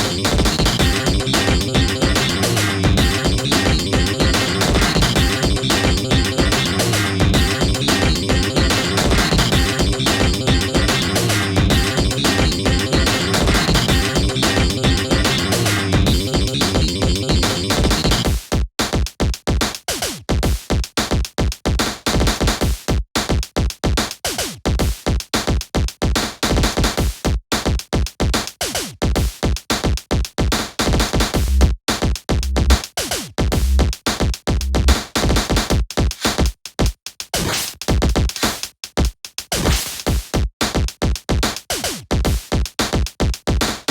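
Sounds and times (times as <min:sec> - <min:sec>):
electronic music with drum-machine beat: 0:00.0 - 0:18.5.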